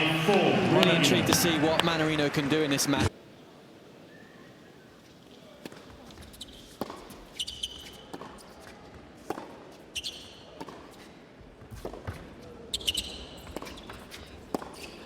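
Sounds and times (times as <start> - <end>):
shoe squeaks on court: 5.7 - 8.6, 9.9 - 11.1, 11.8 - 15.0
tennis ball struck and bouncing: 10.6 - 10.9.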